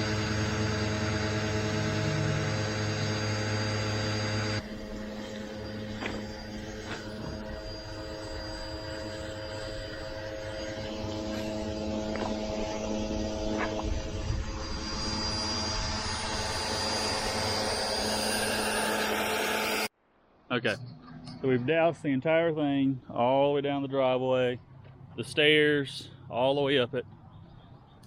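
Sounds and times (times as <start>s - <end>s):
pressure washer motor humming: 0.0s - 19.9s.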